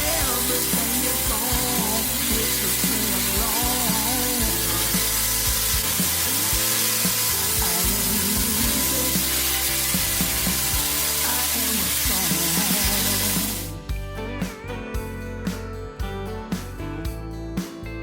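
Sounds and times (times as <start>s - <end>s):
steady sizzling hiss: 0.0s - 13.8s
background music: 0.0s - 18.0s.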